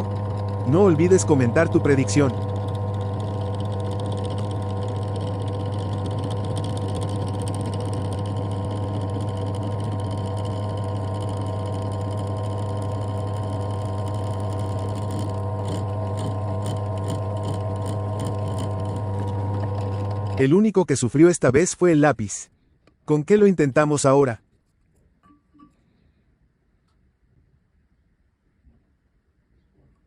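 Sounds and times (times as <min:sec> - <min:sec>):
electric drill running: 0:00.0 - 0:20.4
pencil grinding scratchy ticks: 0:00.0 - 0:20.4.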